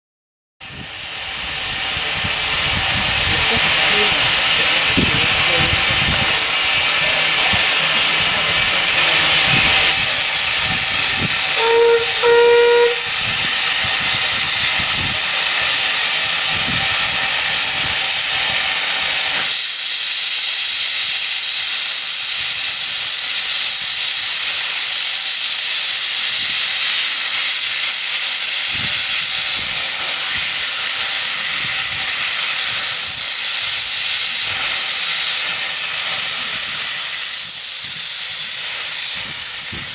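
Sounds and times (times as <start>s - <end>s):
steam locomotive hissing: 0.6s - 39.9s
locomotive whistle toots: 11.5s - 13.2s.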